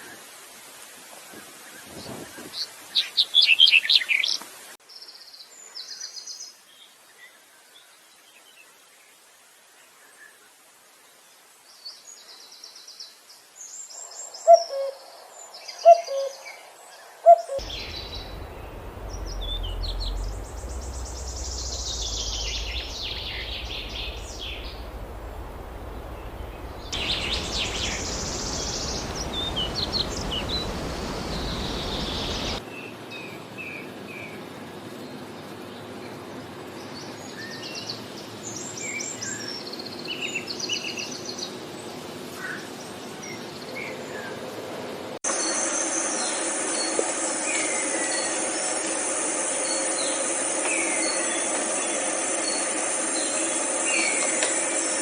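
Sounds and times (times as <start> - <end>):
whistled bird calls: 14.4 - 15.0, 15.7 - 16.6, 17.2 - 32.6
low hooting bird calls: 17.2 - 32.6
high bird chirps: 17.3 - 32.6
steady rushing background: 17.6 - 32.6, 45.3 - 55.0.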